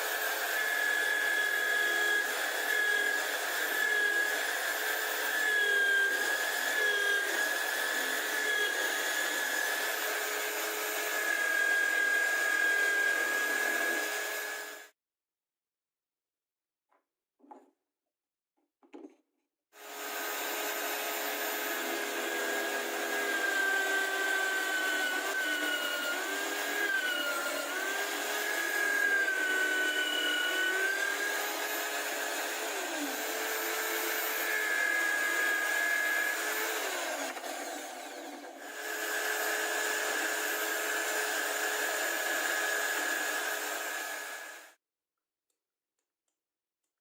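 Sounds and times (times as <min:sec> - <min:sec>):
power tool motor running: 0:00.0 - 0:14.8, 0:19.8 - 0:44.7.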